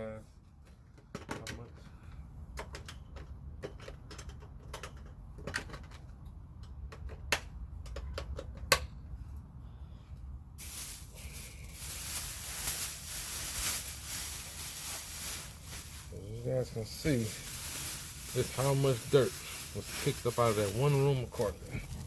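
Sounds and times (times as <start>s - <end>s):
plastic bag crinkling: 10.6s - 22.0s
steady hiss: 10.6s - 22.0s.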